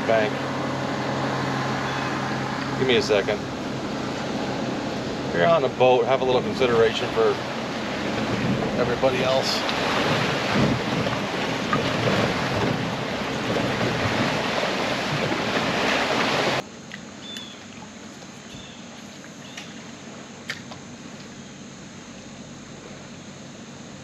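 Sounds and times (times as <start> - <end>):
water splashing: 0.0 - 21.4
wind noise on microphone: 7.9 - 16.6.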